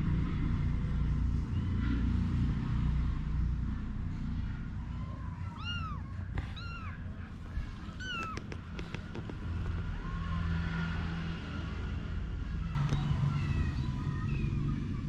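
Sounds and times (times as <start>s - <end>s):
kitten mewing: 5.3s - 9.6s.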